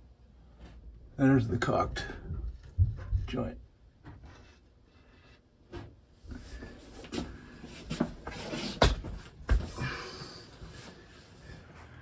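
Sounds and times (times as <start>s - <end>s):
objects knocking and clunking: 2.0s - 4.6s, 7.1s - 9.9s.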